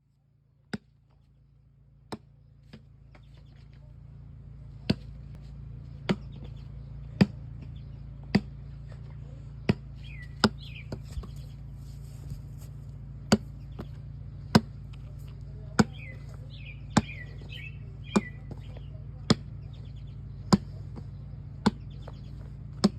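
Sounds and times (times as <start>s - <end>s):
steady low hum: 0.0s - 22.9s
ball thudding on hard surface: 4.8s - 5.2s, 5.9s - 6.6s, 7.2s - 8.6s, 9.6s - 11.4s, 13.2s - 16.2s, 16.9s - 17.5s, 18.1s - 19.6s, 20.3s - 22.9s
faint bird chirps: 8.8s - 11.8s, 15.7s - 22.6s.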